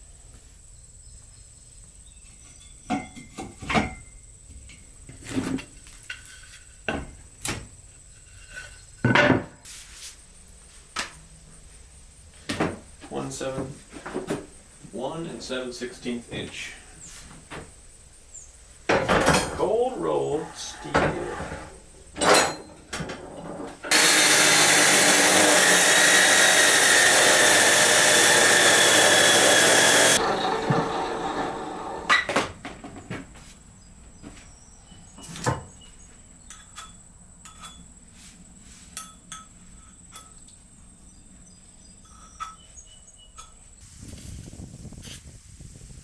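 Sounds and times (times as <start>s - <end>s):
power tool running: 23.9s - 32.1s.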